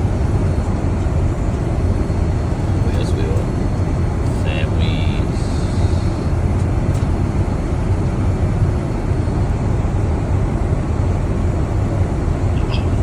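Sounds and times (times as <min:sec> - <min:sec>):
airliner cabin drone: 0:00.0 - 0:13.0.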